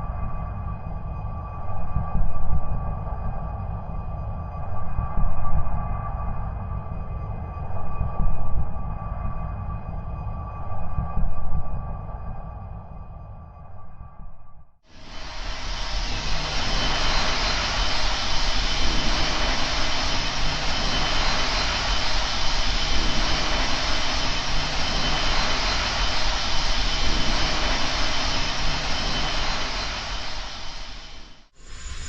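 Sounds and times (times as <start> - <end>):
jet engine rushing roar: 14.9 - 32.0.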